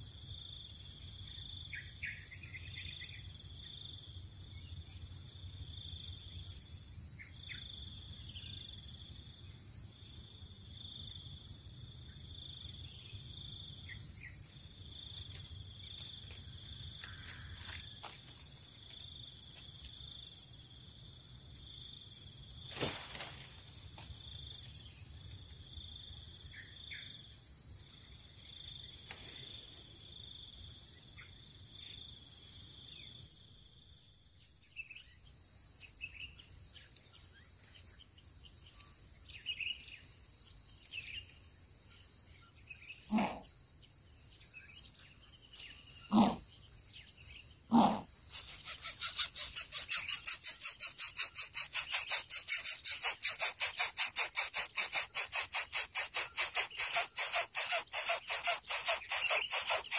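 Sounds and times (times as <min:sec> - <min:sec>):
crickets trilling: 0:00.0 - 0:59.9
faint bird chirps: 0:47.0 - 0:59.9
loud rapid pulsing: 0:50.9 - 0:59.9.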